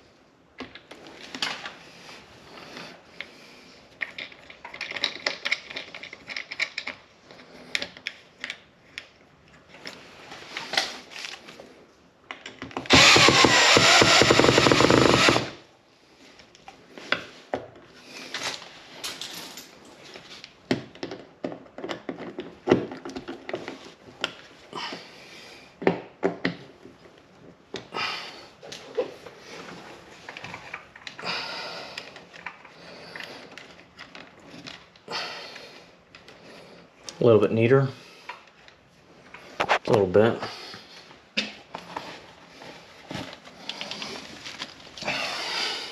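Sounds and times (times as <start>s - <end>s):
rustling handling noises: 0.8s - 12.8s, 40.7s - 45.2s.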